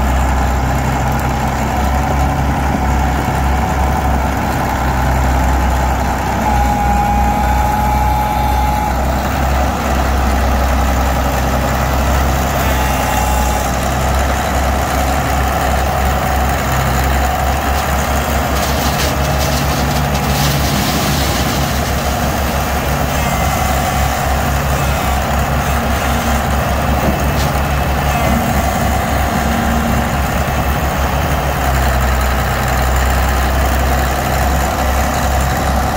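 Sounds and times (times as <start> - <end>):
diesel engine droning: 0.0 - 35.9.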